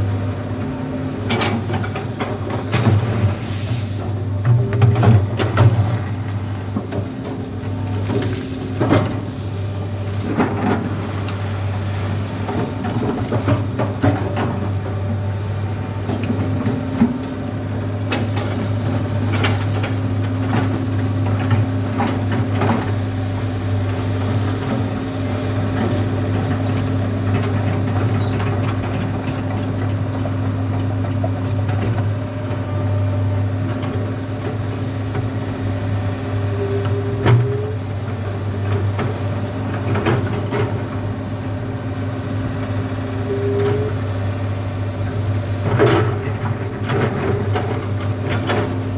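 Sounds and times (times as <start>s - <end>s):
excavator diesel engine running: 0.0s - 48.9s
knocks and clatter of digging gravel: 1.3s - 11.4s, 23.8s - 32.2s.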